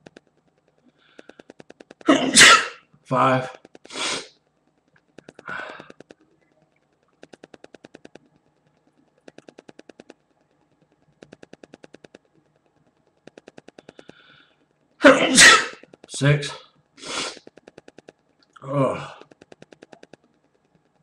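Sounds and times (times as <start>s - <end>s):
rapid clicking bursts: 0.0s - 2.1s, 3.5s - 15.0s, 15.7s - 16.2s, 16.8s - 21.0s
man sneezing: 2.1s - 2.8s, 15.0s - 15.8s
man breathing: 5.4s - 5.9s.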